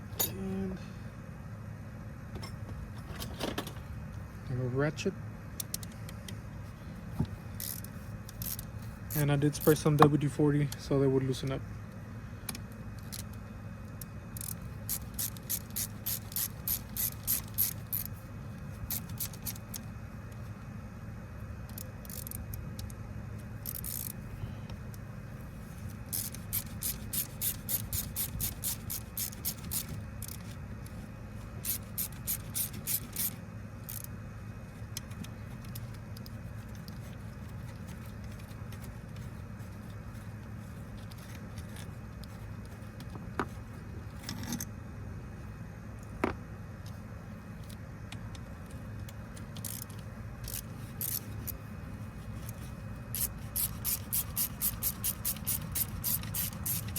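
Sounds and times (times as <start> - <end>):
steady low hum: 0.0 - 56.9
socket ratchet clicking: 7.6 - 9.8, 14.4 - 18.1, 18.9 - 19.9, 21.7 - 23.0, 23.6 - 24.2, 26.0 - 30.5, 31.6 - 34.1, 49.4 - 51.6, 53.2 - 56.9.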